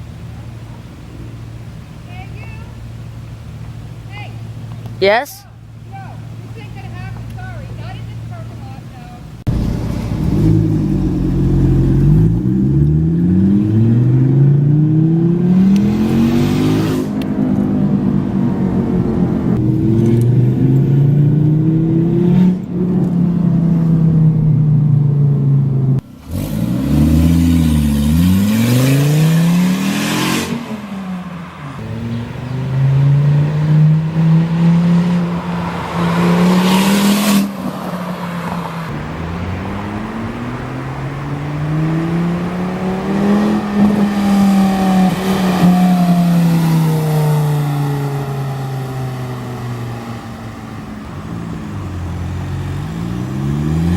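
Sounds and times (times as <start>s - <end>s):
car engine accelerating: 8.6s - 53.9s
loud rushes of noise: 9.4s - 13.9s, 26.3s - 51.9s.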